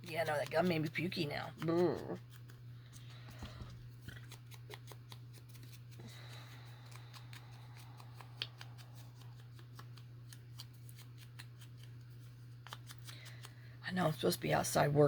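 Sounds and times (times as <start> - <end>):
scissors snipping paper: 0.0 - 3.1, 4.2 - 11.9, 12.6 - 13.6
steady low hum: 0.0 - 15.0.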